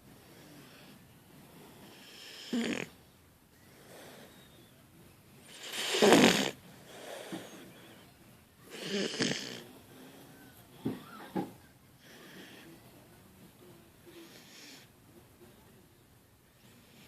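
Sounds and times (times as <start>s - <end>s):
soft breathing: 0.0s - 4.9s, 6.5s - 11.3s, 11.9s - 15.0s
puppy snoring: 0.3s - 3.0s, 5.5s - 7.8s, 8.7s - 9.7s, 14.1s - 14.9s.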